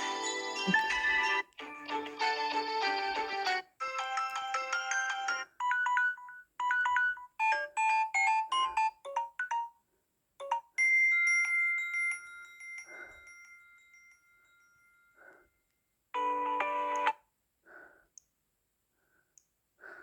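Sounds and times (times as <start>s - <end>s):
ringing phone tone: 0.0s - 9.7s, 16.2s - 17.2s
bell-like ringtone melody: 0.0s - 9.8s, 10.4s - 15.4s.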